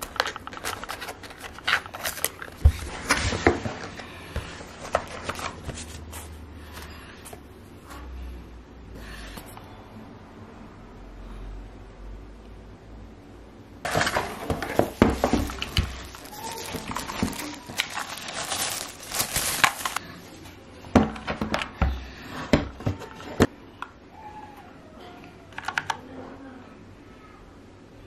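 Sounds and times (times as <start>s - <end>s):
packaging rustling and crinkling: 0.0s - 6.4s, 13.9s - 20.1s.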